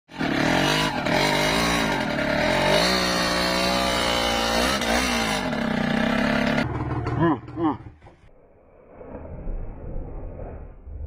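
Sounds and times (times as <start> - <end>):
two-stroke motorcycle engine revving: 0.1 - 8.1.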